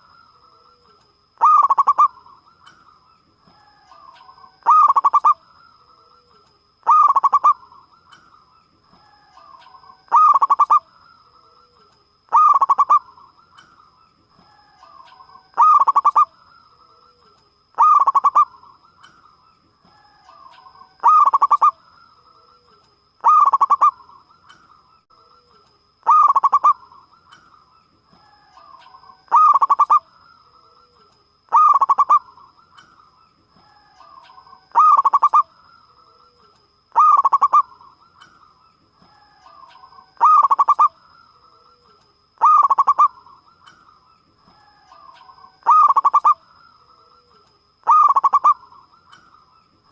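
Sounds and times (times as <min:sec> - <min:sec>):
faint high-pitched whine: 0:00.0 - 0:49.9
zebra dove cooing: 0:00.8 - 0:02.4, 0:03.8 - 0:05.4, 0:06.8 - 0:07.8, 0:09.1 - 0:10.9, 0:12.3 - 0:13.3, 0:14.5 - 0:16.3, 0:17.1 - 0:18.8, 0:20.2 - 0:21.8, 0:23.2 - 0:24.2, 0:26.0 - 0:27.1, 0:28.4 - 0:30.1, 0:31.5 - 0:32.5, 0:33.9 - 0:35.5, 0:36.9 - 0:38.0, 0:39.3 - 0:41.0, 0:41.8 - 0:43.4, 0:44.7 - 0:46.4, 0:47.8 - 0:48.9.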